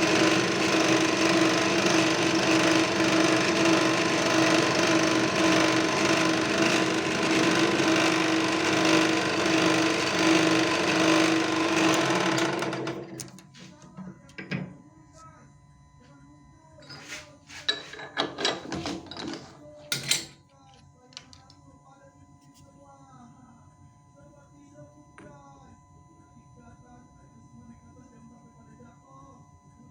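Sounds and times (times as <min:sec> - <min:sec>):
power tool motor humming: 0:00.0 - 0:13.2.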